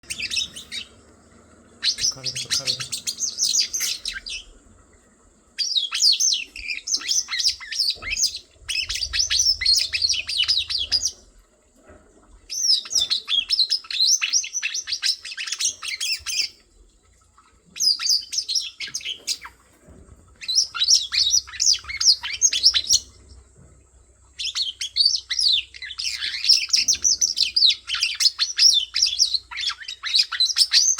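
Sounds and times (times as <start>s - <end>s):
birds chirping: 0.0s - 30.9s.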